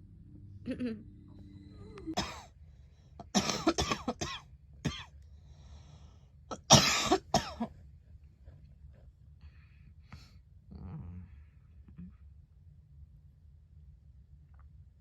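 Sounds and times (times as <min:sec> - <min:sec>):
girl coughing: 0:02.1 - 0:02.5, 0:03.2 - 0:05.1, 0:06.5 - 0:07.7.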